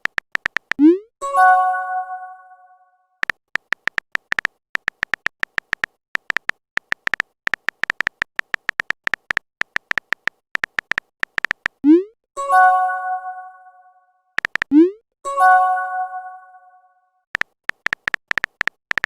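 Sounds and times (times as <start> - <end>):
rapid electronic typing beeps: 0.0 - 1.1, 3.3 - 12.1, 14.4 - 15.0, 17.4 - 19.0
notification chime: 0.8 - 2.6.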